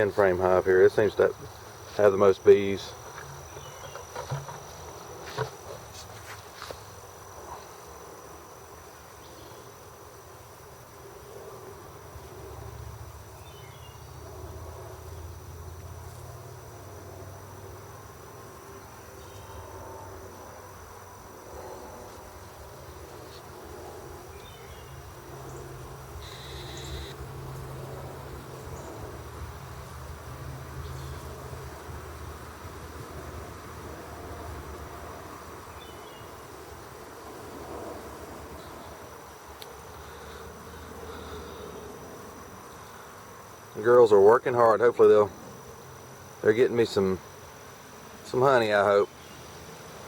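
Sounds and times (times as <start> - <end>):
bees buzzing: 0.0 - 7.9, 22.3 - 33.6.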